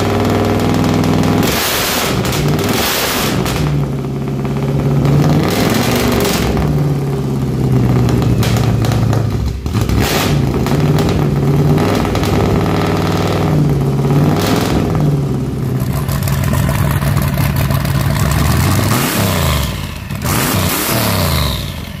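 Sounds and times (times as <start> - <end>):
car engine idling and revving: 0.0 - 22.0.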